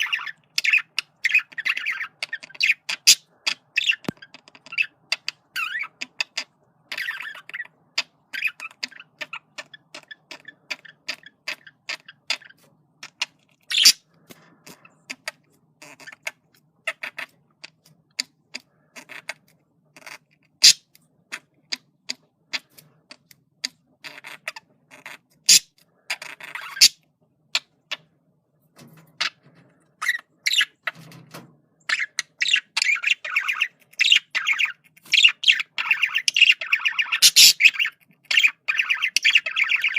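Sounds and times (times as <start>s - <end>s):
budgerigar chattering: 0.0s - 14.0s, 20.0s - 22.8s, 31.9s - 39.9s.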